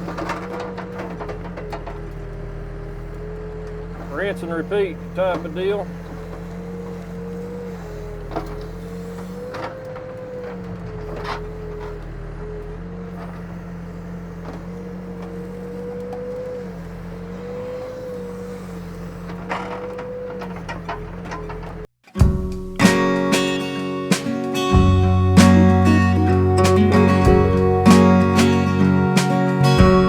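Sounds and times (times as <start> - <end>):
diesel engine under load: 0.0 - 30.0.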